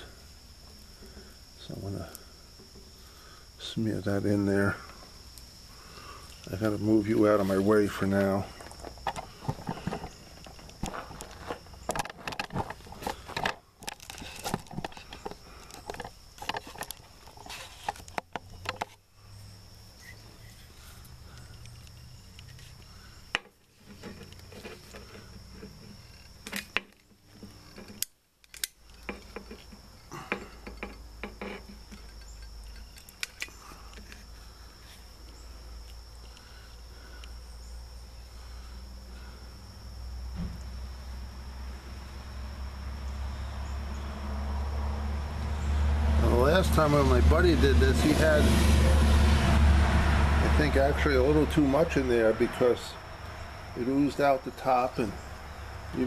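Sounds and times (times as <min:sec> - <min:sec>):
handling clicks and scrapes: 0:07.2 - 0:19.0, 0:20.0 - 0:37.3.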